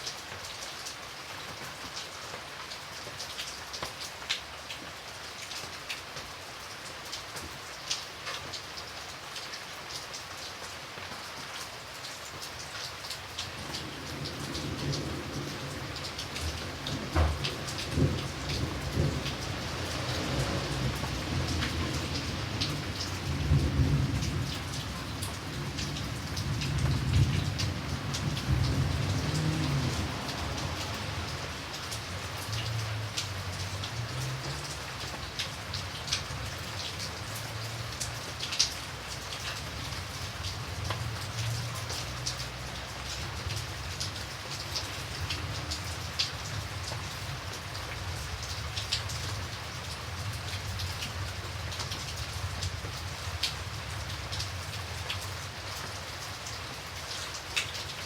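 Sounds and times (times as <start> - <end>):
steady rain: 0.0 - 58.0
low rumble of thunder: 13.6 - 33.2
sharp raindrop hits: 14.2 - 34.6.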